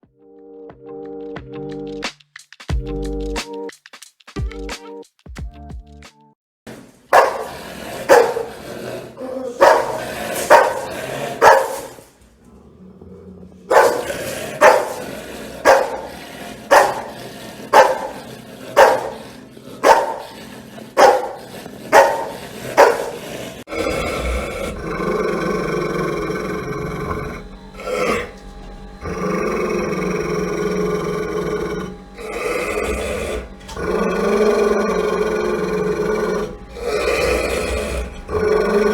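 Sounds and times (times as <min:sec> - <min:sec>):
dog barking: 0:07.1 - 0:08.6, 0:09.2 - 0:12.1, 0:13.7 - 0:24.1
dog snarling growl: 0:07.2 - 0:38.9.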